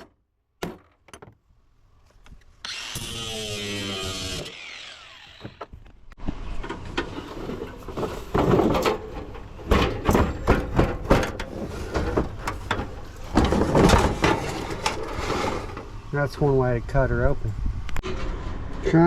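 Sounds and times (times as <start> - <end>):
knocks clatter and scraping: 4.5 - 16.1.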